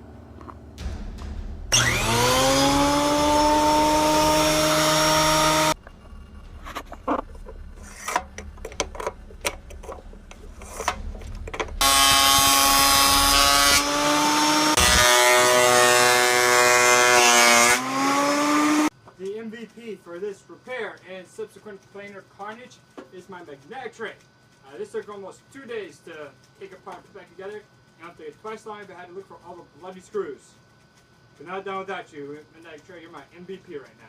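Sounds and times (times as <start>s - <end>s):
planer motor whining: 1.7s - 5.8s, 11.6s - 18.9s
handling knocks and clicks: 5.8s - 11.8s.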